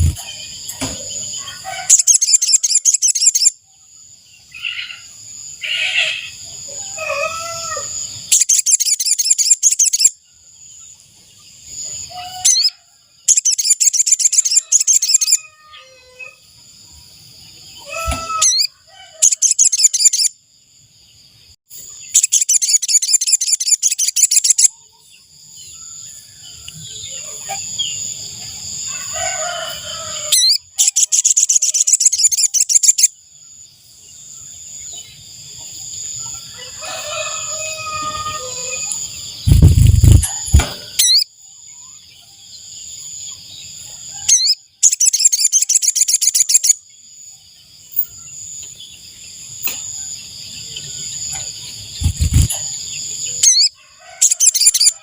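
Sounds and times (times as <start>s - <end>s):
fast high bird chirps: 1.9s - 3.6s, 8.3s - 10.1s, 12.4s - 15.4s, 18.0s - 20.3s, 21.9s - 24.7s, 30.3s - 33.1s, 39.0s - 41.3s, 44.3s - 46.8s, 51.9s - 55.0s.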